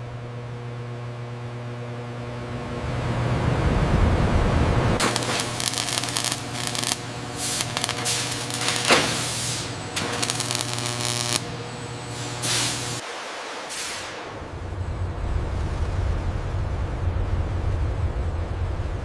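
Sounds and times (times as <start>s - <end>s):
machine hum: 0.0s - 13.0s
spraying hiss: 5.0s - 11.4s.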